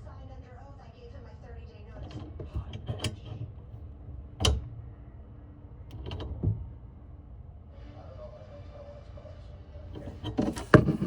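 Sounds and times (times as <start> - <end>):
tools and parts clicking and knocking: 2.0 - 3.4, 10.0 - 11.0.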